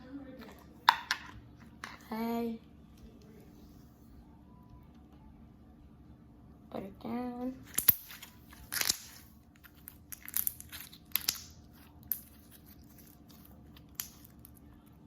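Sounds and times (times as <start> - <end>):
crunchy slime crackling: 7.6 - 14.8.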